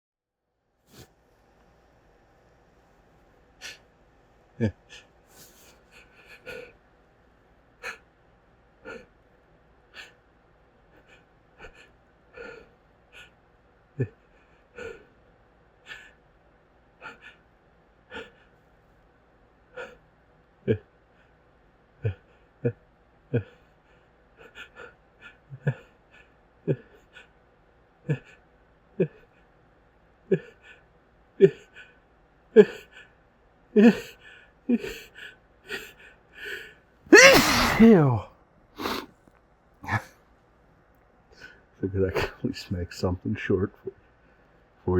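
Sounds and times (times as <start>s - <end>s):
sharp gasping breaths: 35.1s - 38.2s, 38.8s - 39.1s, 39.8s - 40.1s
pre-sneeze gasps: 37.1s - 38.2s, 38.8s - 39.1s.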